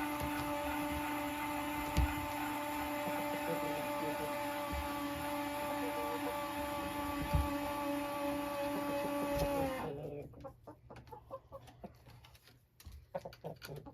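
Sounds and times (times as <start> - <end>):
electrical hum: 0.0 - 10.1.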